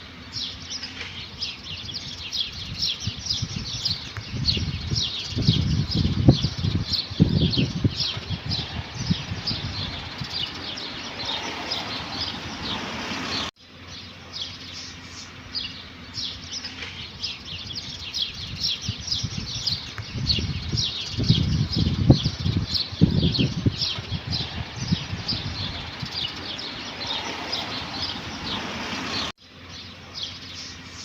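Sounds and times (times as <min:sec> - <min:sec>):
flock of small birds chirping: 0:00.0 - 0:31.0
low irregular rumbling: 0:15.3 - 0:29.3.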